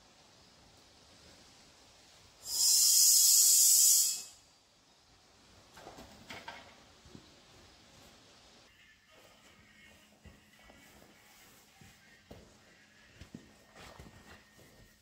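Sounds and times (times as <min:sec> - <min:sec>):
compressed air hissing from hose: 0:02.4 - 0:04.4.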